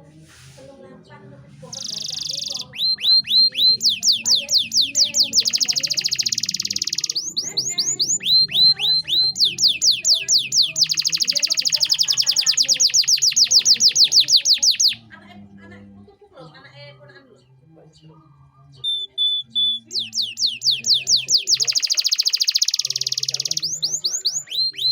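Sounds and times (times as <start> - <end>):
canary singing with fast trills: 1.4 - 24.9.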